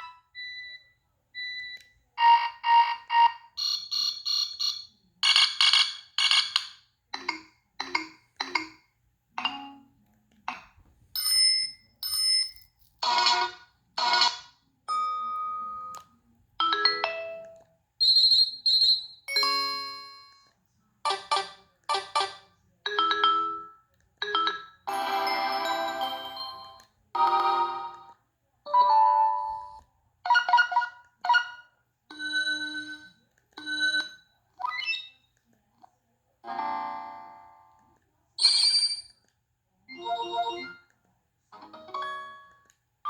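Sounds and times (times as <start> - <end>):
phone ringtones and alert tones: 0.0 - 8.8, 16.6 - 20.4, 21.1 - 35.2, 39.9 - 40.8.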